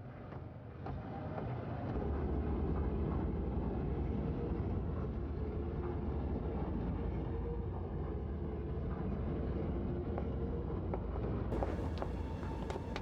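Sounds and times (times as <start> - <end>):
faint steady hum: 11.6 - 13.0
low mechanical rumble: 11.6 - 13.0.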